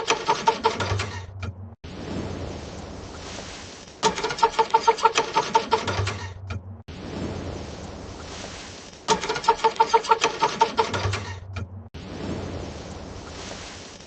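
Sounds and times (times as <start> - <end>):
car engine cranking: 0.0 - 1.8, 4.0 - 6.8, 9.1 - 11.8.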